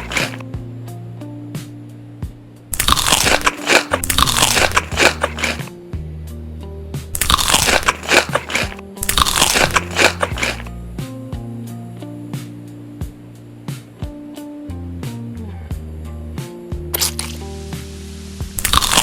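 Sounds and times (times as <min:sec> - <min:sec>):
crunchy food chewing: 0:00.0 - 0:00.4, 0:02.8 - 0:05.7, 0:07.2 - 0:10.7, 0:17.0 - 0:17.4, 0:18.6 - 0:19.0
background music: 0:00.0 - 0:19.0.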